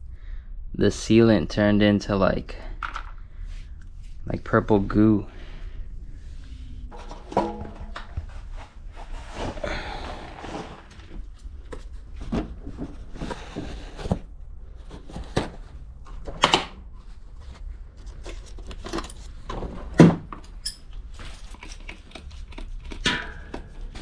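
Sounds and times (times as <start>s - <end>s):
hands working on bike wheel: 20.2s - 24.0s.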